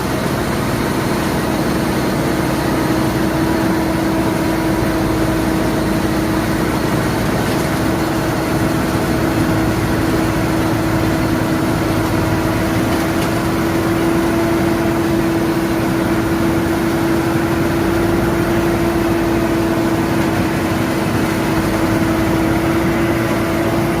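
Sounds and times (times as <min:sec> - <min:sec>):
wood chipper running: 0:00.0 - 0:24.0.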